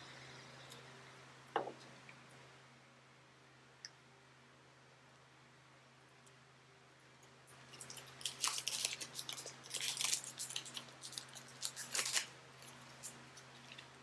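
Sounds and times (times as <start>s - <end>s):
packaging crinkling: 7.7s - 14.0s.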